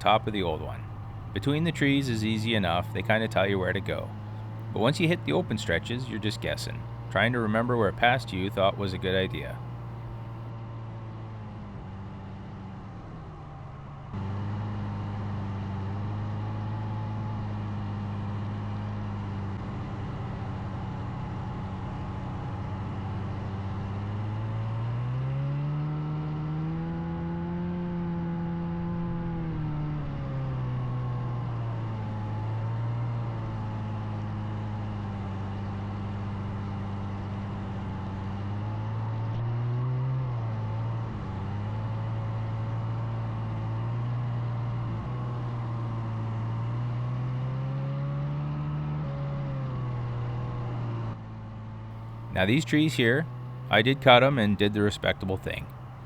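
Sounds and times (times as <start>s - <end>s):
snowmobile engine running: 0.0s - 10.4s, 52.1s - 56.0s.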